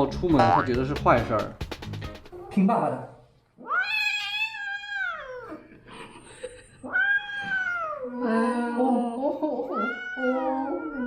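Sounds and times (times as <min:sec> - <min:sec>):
cat yowling: 0:03.6 - 0:05.6, 0:06.8 - 0:08.4, 0:09.8 - 0:11.0.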